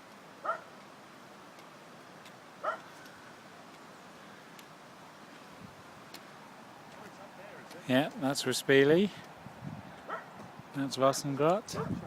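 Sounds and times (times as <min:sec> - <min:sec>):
dog barking: 0:00.4 - 0:00.7, 0:02.6 - 0:02.8, 0:10.1 - 0:10.3, 0:11.7 - 0:12.0.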